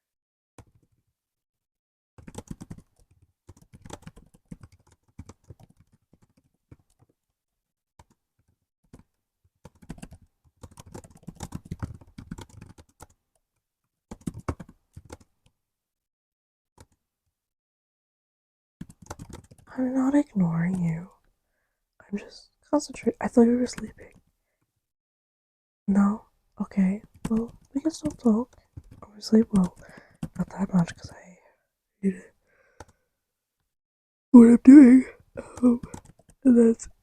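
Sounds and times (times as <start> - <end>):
laptop keyboard typing: 2.2 - 7.2, 8.0 - 13.2, 14.1 - 15.4, 18.8 - 19.7, 27.0 - 30.9, 35.4 - 36.6.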